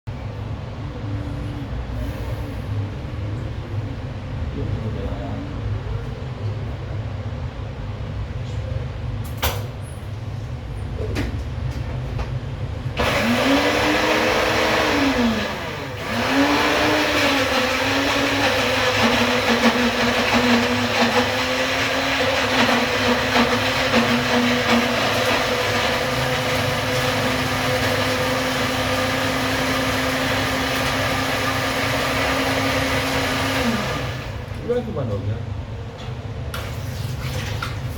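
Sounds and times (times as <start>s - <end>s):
blender motor running: 13.0s - 34.6s.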